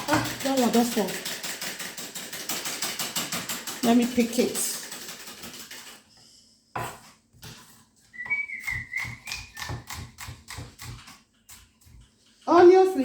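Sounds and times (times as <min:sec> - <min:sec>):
knife chopping onion on board: 0:00.0 - 0:04.2, 0:06.8 - 0:12.0
faint high whistle: 0:08.1 - 0:09.7.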